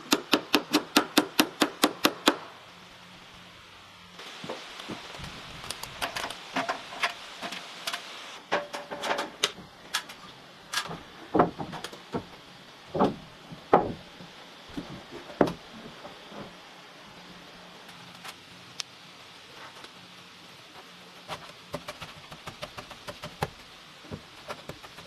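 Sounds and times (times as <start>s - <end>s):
wood and tools knocking: 10.8s - 14.1s.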